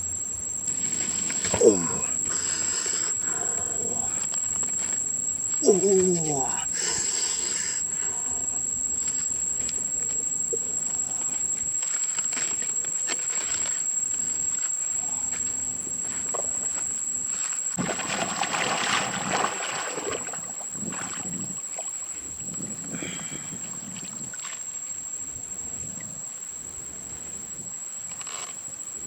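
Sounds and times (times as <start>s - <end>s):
crickets chirring: 0.0s - 29.0s
rustling noise: 0.7s - 1.6s.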